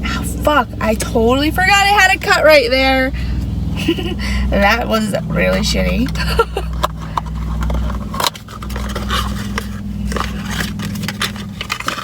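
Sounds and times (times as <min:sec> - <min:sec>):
steady low hum: 0:00.0 - 0:12.0
small objects scraping and rustling: 0:06.7 - 0:12.0.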